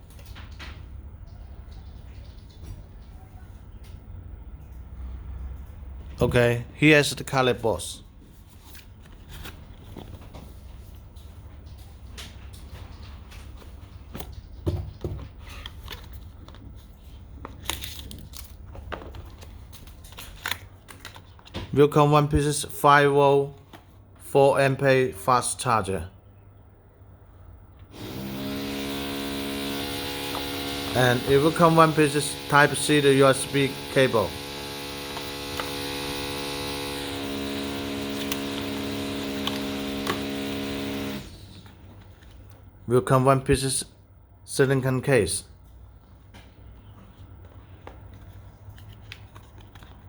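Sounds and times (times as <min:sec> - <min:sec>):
steady electrical hum: 0:27.8 - 0:42.6.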